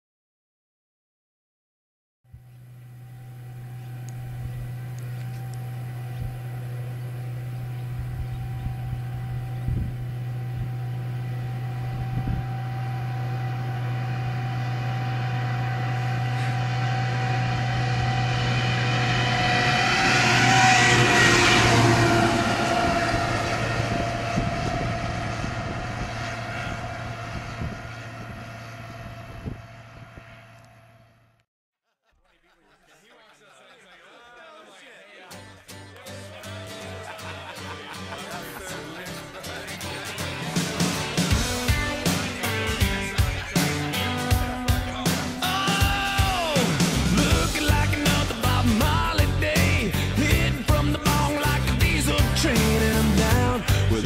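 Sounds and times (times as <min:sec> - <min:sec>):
vehicle engine hum and whine: 0:02.3 - 0:31.4.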